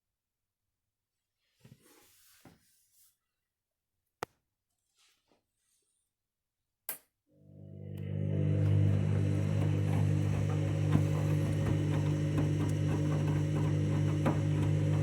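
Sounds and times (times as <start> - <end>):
washing machine drum motor hum: 7.5 - 15.0.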